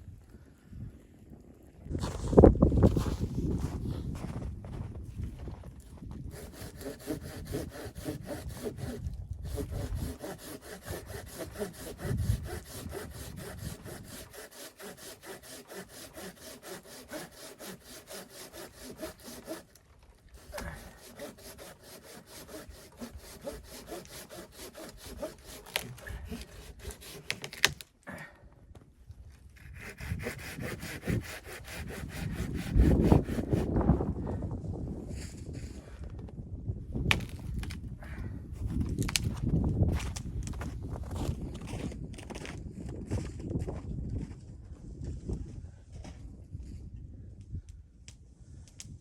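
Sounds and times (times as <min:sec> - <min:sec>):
hand saw cutting wood: 0:06.2 - 0:27.8, 0:29.6 - 0:33.8.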